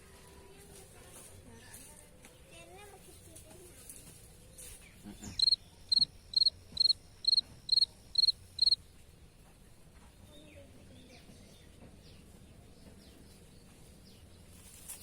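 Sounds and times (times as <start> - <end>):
insect chirping: 5.3 - 8.8.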